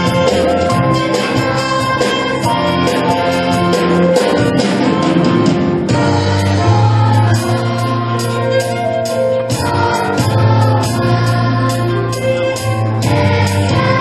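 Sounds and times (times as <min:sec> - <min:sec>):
assembly singing: 0:00.0 - 0:14.0
instrumental accompaniment: 0:00.0 - 0:14.0.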